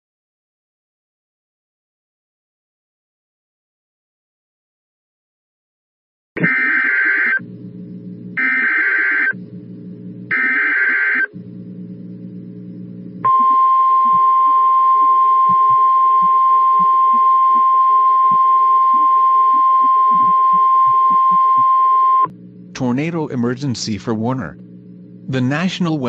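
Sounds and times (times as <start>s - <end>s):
digital data bursts: 6.4s - 7.4s, 8.4s - 9.4s, 10.3s - 11.3s, 13.2s - 23.6s
steady attention tone: 6.4s - 26.0s.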